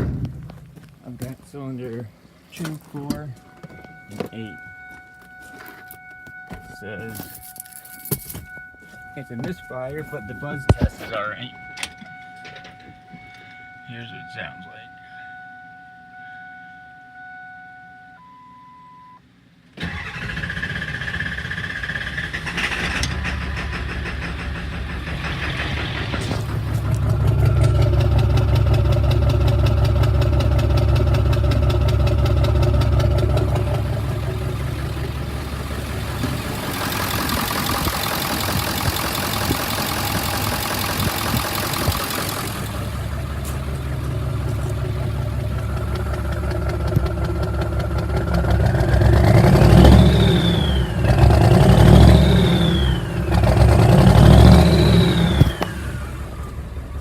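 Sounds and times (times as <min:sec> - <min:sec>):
diesel engine idling with misfire: 0:00.0 - 0:15.7, 0:19.8 - 0:57.0
engine revving with whine: 0:19.8 - 0:57.0.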